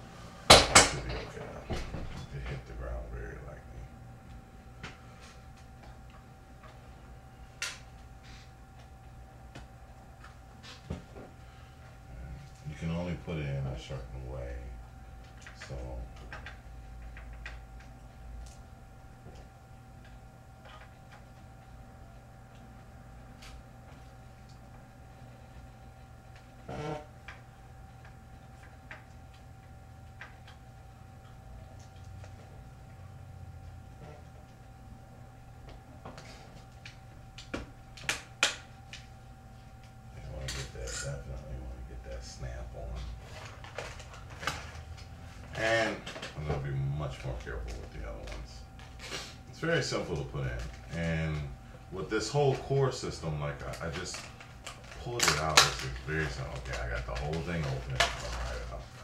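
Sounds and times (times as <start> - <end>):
faint steady hum: 0.0 - 59.0
computer parts clicking and tapping: 54.0 - 58.7.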